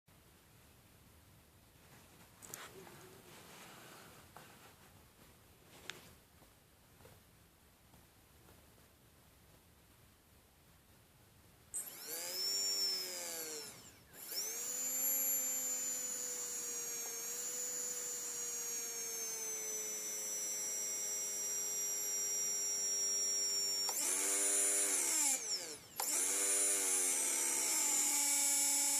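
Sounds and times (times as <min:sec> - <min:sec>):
small electric motor whining: 0:11.8 - 0:28.9.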